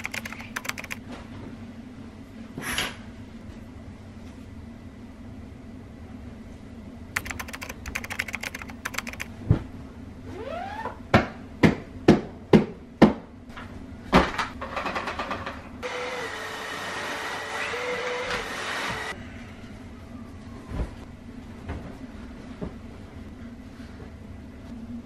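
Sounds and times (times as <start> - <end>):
keyboard typing clicks: 0.0 - 1.0, 7.2 - 9.3.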